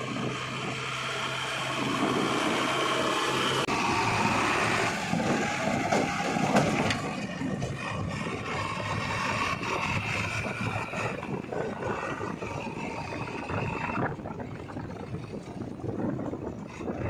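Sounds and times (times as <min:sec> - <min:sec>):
heavy diesel machinery running: 0:00.0 - 0:17.0
knocks and clatter: 0:05.1 - 0:08.4.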